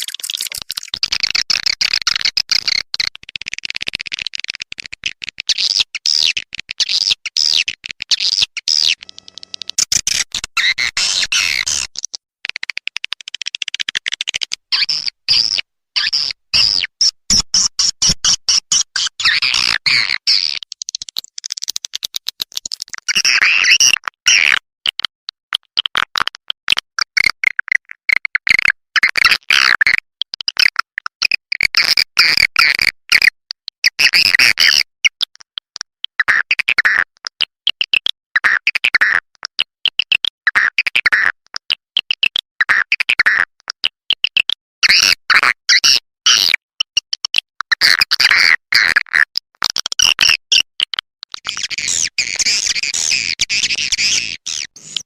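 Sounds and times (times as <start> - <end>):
bird clicks and chirps: 0.0 - 15.6, 17.3 - 23.2, 50.0 - 55.0.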